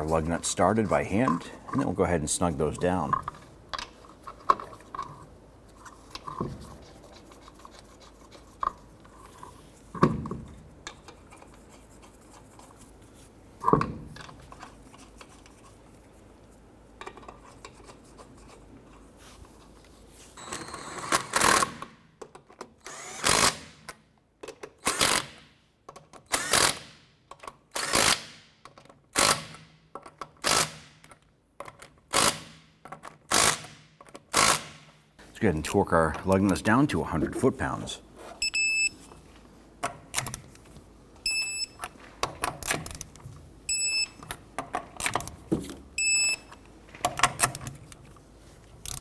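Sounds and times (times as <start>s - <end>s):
power tool bursts: 20.4s - 21.8s, 22.9s - 23.7s.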